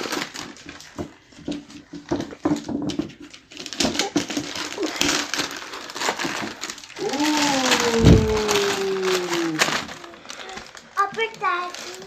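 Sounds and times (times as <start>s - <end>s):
gift wrap crinkling and tearing: 0.0s - 12.0s
voice-like falling tone: 7.0s - 9.8s.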